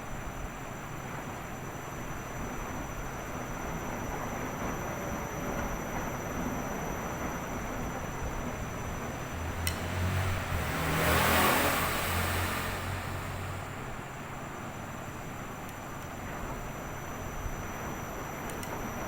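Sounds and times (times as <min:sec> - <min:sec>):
rush of noise: 0:08.5 - 0:14.7.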